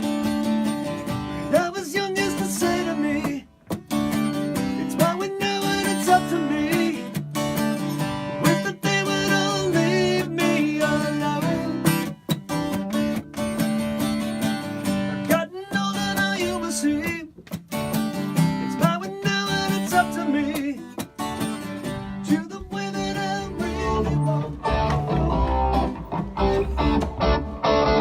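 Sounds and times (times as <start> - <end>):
guitar strumming chords: 0.0 - 28.0
bass line: 21.3 - 28.0.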